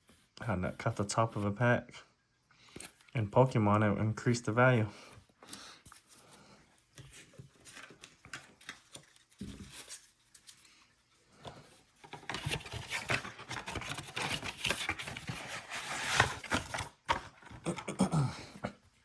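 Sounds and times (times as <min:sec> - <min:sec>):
cards rustling and sliding: 0:02.6 - 0:03.1, 0:05.0 - 0:17.7.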